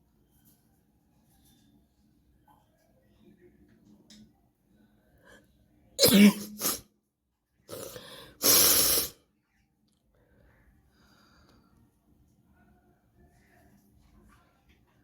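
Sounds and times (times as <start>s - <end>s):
woman sneezing: 6.0s - 6.8s, 7.7s - 9.2s
woman's nasal breath bursts: 7.7s - 9.2s.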